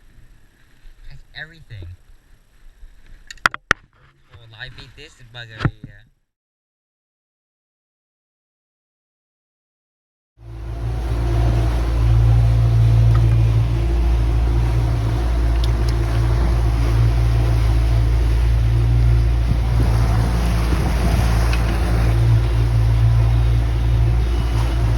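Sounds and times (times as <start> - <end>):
engine humming steadily: 10.4 - 24.9.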